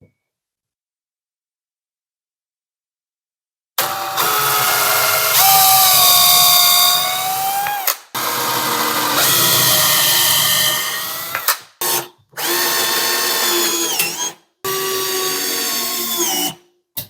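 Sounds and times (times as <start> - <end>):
power drill motor whine: 3.8 - 16.6.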